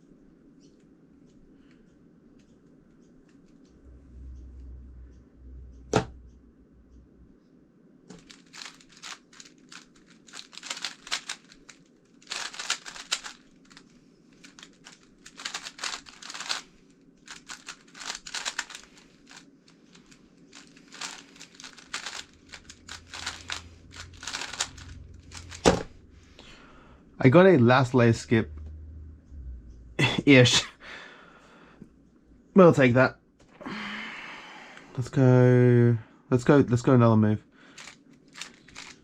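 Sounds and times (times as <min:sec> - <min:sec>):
plastic puzzle cube clicking: 0:08.2 - 0:16.6, 0:17.2 - 0:25.8, 0:37.8 - 0:39.0.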